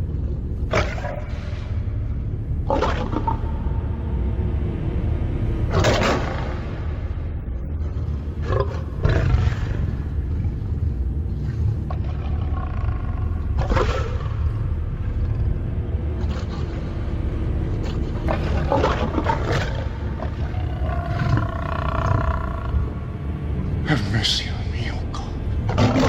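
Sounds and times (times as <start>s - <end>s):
steady low rumble: 0.0s - 26.0s
lions roaring: 0.7s - 1.8s, 2.6s - 3.6s, 5.7s - 10.7s, 11.4s - 15.5s, 16.2s - 17.0s, 17.7s - 23.2s, 25.6s - 26.0s.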